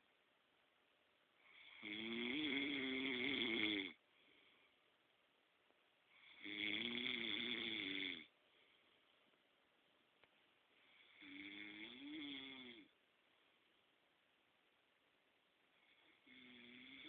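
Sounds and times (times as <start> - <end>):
man snoring: 1.4 - 4.0, 6.2 - 8.3, 11.0 - 12.9, 15.9 - 17.0.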